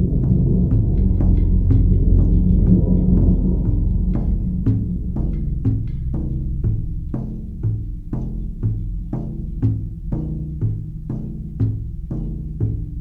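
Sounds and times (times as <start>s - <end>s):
deep sustained tone: 0.0s - 7.6s
low drum beating: 0.0s - 13.0s.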